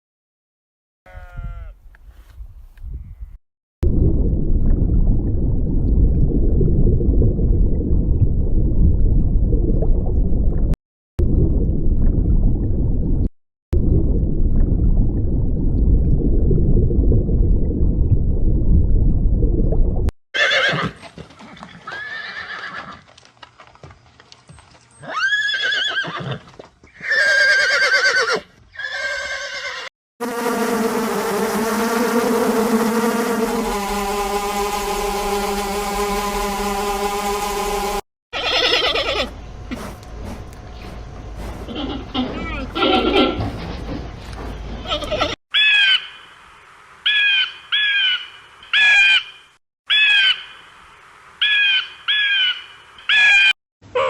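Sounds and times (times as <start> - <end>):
steady droning tone: 30.3 - 38.0
animal high calls: 38.4 - 39.4.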